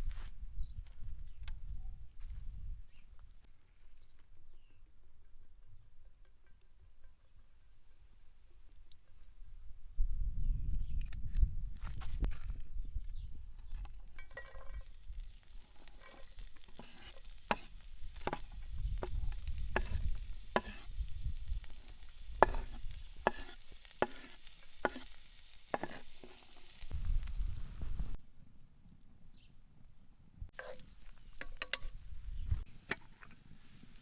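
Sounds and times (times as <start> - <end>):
spatula scraping a pan: 14.4 - 28.2, 30.6 - 31.9, 32.5 - 34.0
sausage sizzling in a pan: 14.6 - 28.2, 30.6 - 31.7, 32.4 - 34.0.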